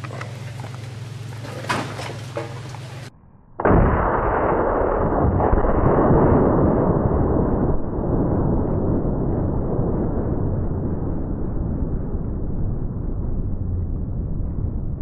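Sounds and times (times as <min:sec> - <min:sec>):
long steady rumble: 0:00.0 - 0:15.0
explosion blast: 0:03.6 - 0:15.0.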